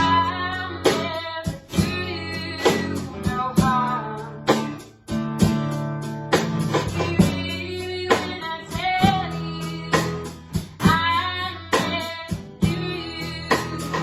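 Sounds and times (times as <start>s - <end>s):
acoustic guitar strumming: 0.0s - 14.0s.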